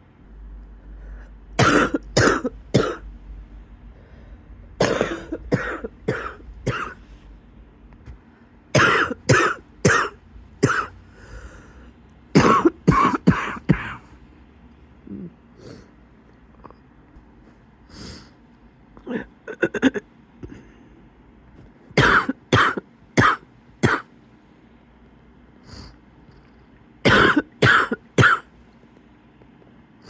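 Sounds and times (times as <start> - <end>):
person coughing wheezily: 1.6 - 3.0, 4.8 - 7.0, 8.8 - 11.0, 12.4 - 14.1, 19.0 - 20.6, 22.0 - 24.1, 27.0 - 28.5.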